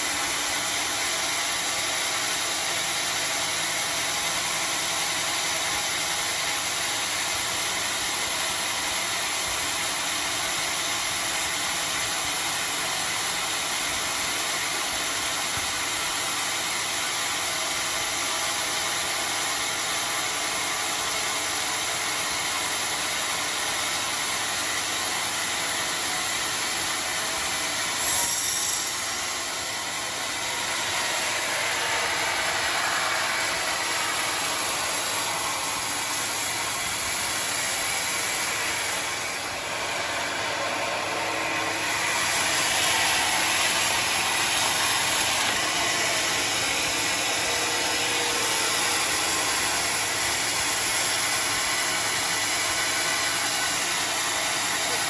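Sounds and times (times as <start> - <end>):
sawmill running: 0.0 - 55.0.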